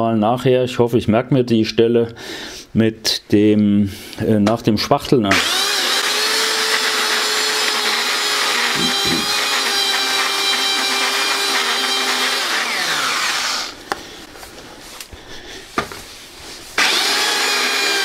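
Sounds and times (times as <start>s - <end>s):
belt sander on concrete: 5.3s - 13.8s, 16.8s - 18.0s.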